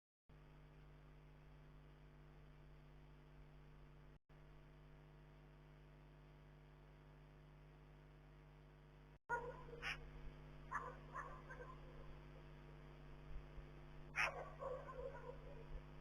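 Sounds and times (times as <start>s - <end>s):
steady electrical hum: 0.4s - 16.0s
short sharp animal calls: 9.3s - 10.1s, 14.2s - 15.8s.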